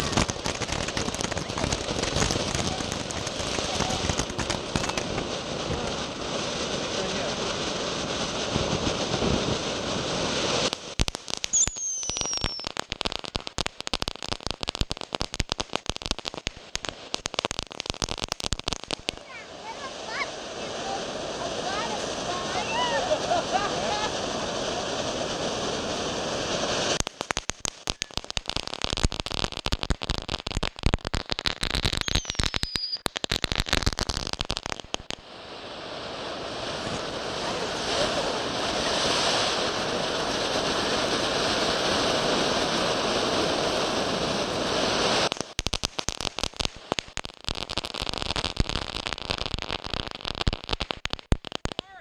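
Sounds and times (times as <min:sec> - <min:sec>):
fireworks crackling: 0:00.0 - 0:52.0
fireworks hissing: 0:00.0 - 0:52.0
falling whistle: 0:11.5 - 0:12.7, 0:32.0 - 0:33.0.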